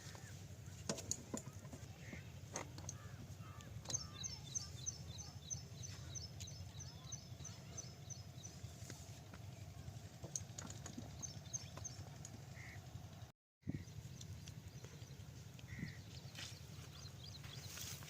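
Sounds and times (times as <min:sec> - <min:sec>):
low steady rumble: 0:00.0 - 0:18.0
small bird chirping: 0:02.9 - 0:08.8.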